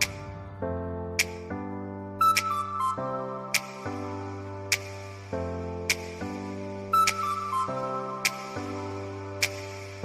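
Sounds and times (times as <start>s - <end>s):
background music held chords: 0.0s - 10.0s
sharp tick: 1.2s - 1.4s.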